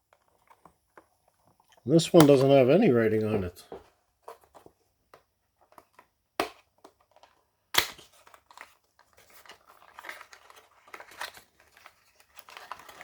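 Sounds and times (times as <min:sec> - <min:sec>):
plastic crinkling and crackling: 0:00.0 - 0:02.8, 0:05.6 - 0:13.0
plastic packaging snapping: 0:06.4 - 0:08.7.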